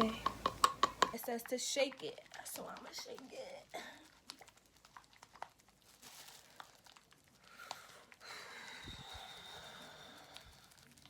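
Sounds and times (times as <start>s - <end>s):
plastic bottle clicking and crinkling: 0.0s - 7.9s
soft steady rustle: 0.0s - 11.0s.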